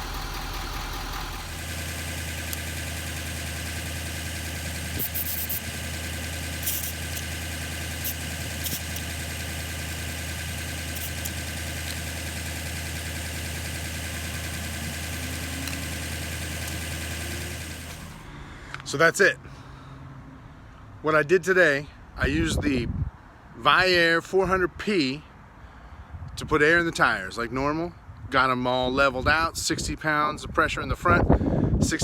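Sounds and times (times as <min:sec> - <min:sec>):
air compressor running: 0:00.0 - 0:18.4.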